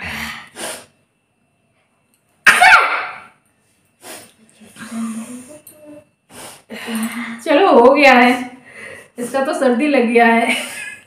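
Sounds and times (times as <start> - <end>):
child sneezing: 2.4 - 3.2
sharp breaths: 6.3 - 7.2.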